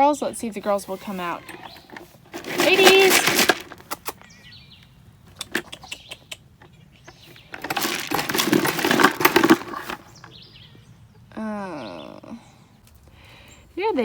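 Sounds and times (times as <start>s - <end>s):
sharp clicks: 1.5s - 10.3s
grain rattling in a container: 1.7s - 3.9s, 7.2s - 10.2s.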